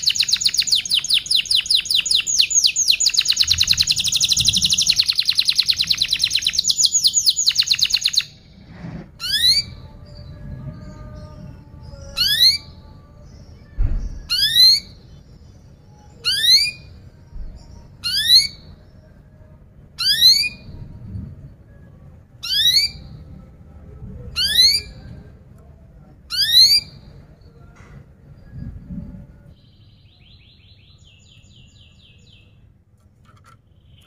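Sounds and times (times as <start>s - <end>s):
faint low hum: 0.0s - 34.0s
canary whistling call: 9.2s - 9.8s, 14.2s - 15.0s, 20.0s - 20.8s, 22.4s - 23.1s, 24.4s - 25.0s.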